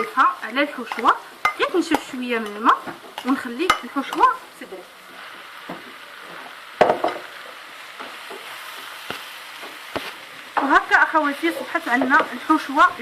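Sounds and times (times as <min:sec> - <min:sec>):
food sizzling in a pan: 0:00.0 - 0:13.0
spoon knocking against pan: 0:06.8 - 0:07.3.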